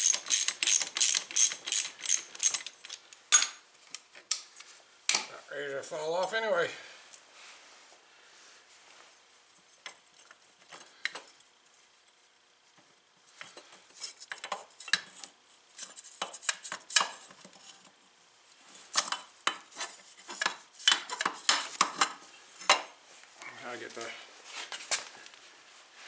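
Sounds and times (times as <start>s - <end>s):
metal tools clinking: 0.0s - 3.6s.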